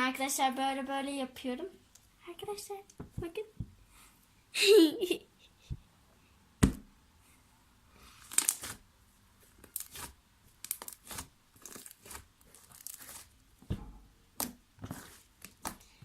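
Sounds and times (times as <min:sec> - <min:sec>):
slime crackling and tearing: 0:08.2 - 0:08.9, 0:09.6 - 0:13.4, 0:14.4 - 0:15.9.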